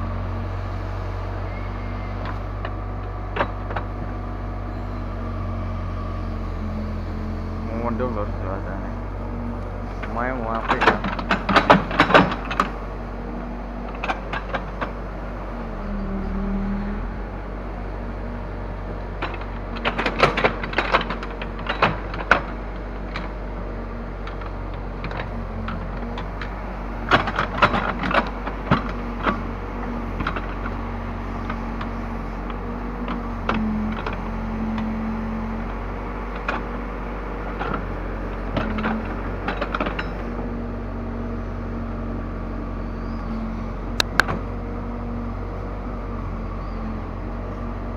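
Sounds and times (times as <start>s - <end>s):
diesel engine running: 0.0s - 47.9s
metallic clanks and rattles: 8.0s - 16.1s, 18.0s - 40.7s.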